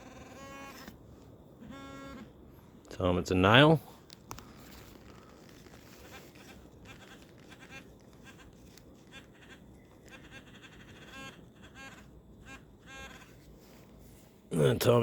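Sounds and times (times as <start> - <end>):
faint bleating animal calls: 0.0 - 1.0, 1.6 - 2.4, 5.2 - 13.8.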